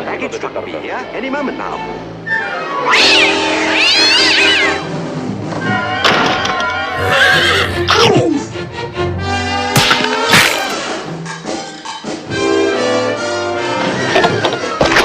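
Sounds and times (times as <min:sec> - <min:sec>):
cartoon cats meowing: 0:07.0 - 0:08.0.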